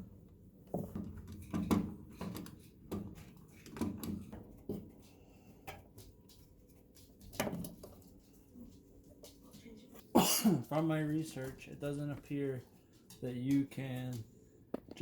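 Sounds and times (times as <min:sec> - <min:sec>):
dryer parts knocking and clunking: 0:00.0 - 0:05.1, 0:07.2 - 0:08.0.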